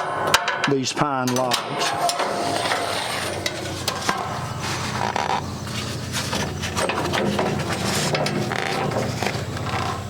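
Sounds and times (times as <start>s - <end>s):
metallic clanks and knocks: 0.0s - 4.4s, 6.3s - 10.0s
steady low hum: 1.4s - 10.0s.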